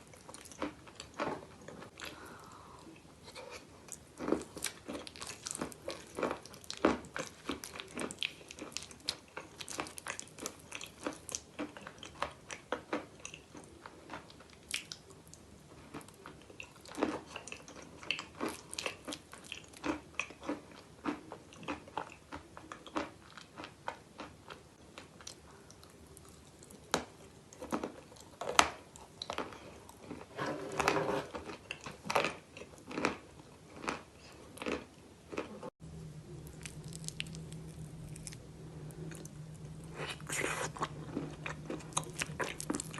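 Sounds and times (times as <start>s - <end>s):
chewing crunchy chalk: 39.0s - 42.9s.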